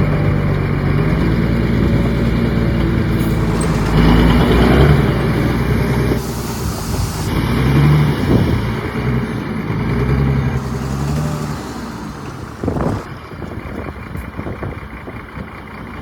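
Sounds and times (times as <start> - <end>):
heavy diesel engine under load: 0.0 - 16.0
rushing hiss: 3.1 - 8.8, 10.4 - 13.2.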